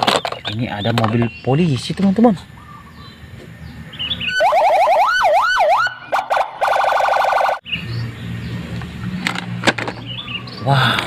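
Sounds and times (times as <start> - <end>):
toy electronic siren: 4.3 - 7.6.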